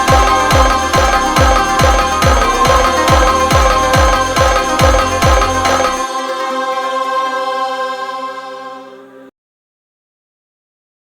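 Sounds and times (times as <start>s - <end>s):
deep pitch-dropping kick drum: 0.0s - 6.0s
held synth chord: 0.0s - 9.3s.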